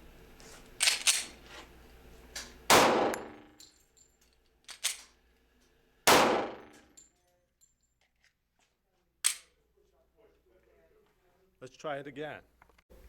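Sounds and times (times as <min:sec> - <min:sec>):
pistol gunshots echoing: 0:02.7 - 0:03.5, 0:06.1 - 0:06.8.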